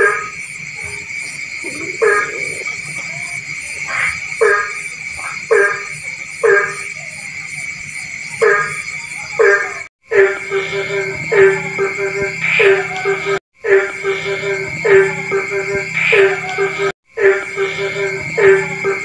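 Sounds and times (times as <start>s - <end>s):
loud nasal frog croaks: 0.0s - 6.9s
high-pitched frog chorus: 0.0s - 19.0s.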